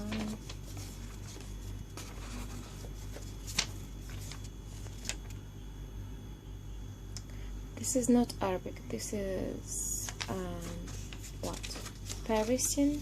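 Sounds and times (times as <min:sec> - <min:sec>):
paper rustling: 0:00.0 - 0:05.4, 0:10.1 - 0:13.0.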